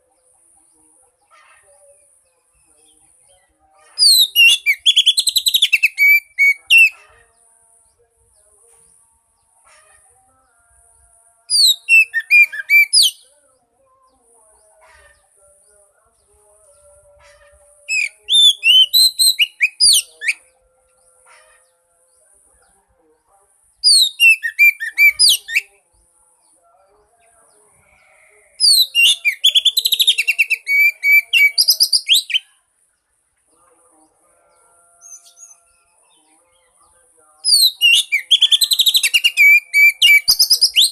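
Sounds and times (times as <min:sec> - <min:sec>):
bird singing whistled phrases: 0:04.0 - 0:06.9, 0:11.5 - 0:13.2, 0:17.9 - 0:20.4, 0:23.8 - 0:25.7, 0:28.6 - 0:32.5, 0:37.5 - 0:40.9.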